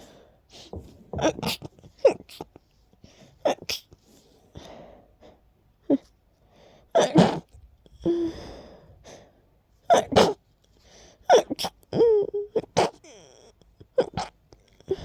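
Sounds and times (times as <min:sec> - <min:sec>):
person sneezing: 0:07.0 - 0:07.5, 0:09.9 - 0:10.4, 0:12.6 - 0:13.1.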